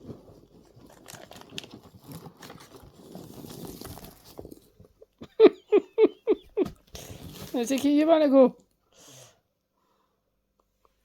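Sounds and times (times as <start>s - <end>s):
cat rustling parcel packaging: 0.0s - 5.0s, 6.8s - 8.2s.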